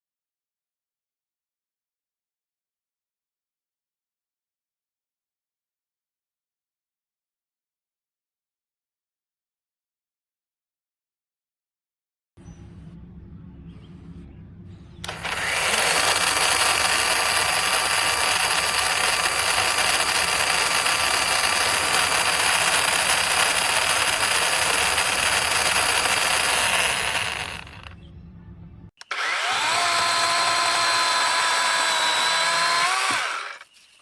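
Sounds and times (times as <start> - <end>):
cordless chainsaw whirring: 15.0 - 28.0, 29.0 - 33.7.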